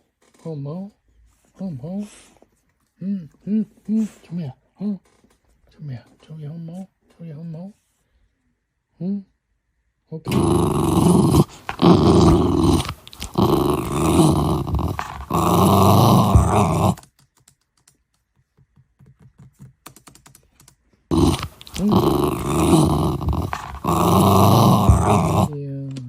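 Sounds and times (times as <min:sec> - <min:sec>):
dog growling: 0:10.3 - 0:17.0, 0:21.1 - 0:25.6.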